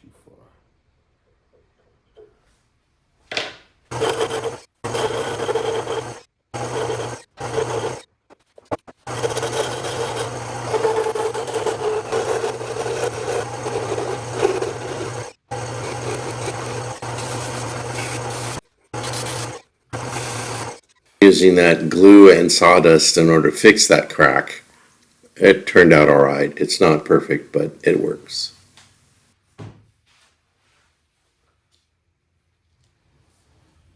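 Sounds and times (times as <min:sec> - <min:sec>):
lathe motor hum: 0:03.9 - 0:08.0, 0:09.1 - 0:23.4
rough rasping of wood: 0:03.9 - 0:08.0, 0:09.1 - 0:20.8.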